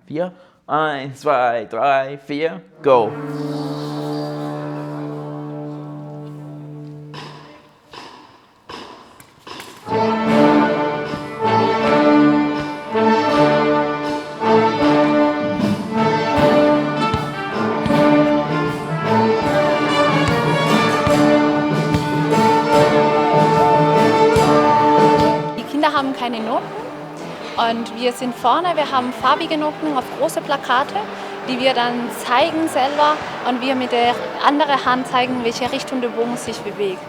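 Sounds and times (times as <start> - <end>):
orchestra playing loud chords: 2.8 - 7.8, 9.8 - 37.0.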